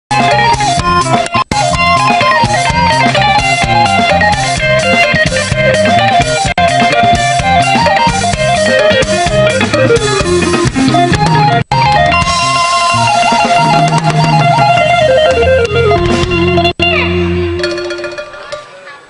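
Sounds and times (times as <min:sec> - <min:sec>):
steady bass line: 0:00.1 - 0:18.4
plucked electric guitar melody: 0:00.1 - 0:19.0.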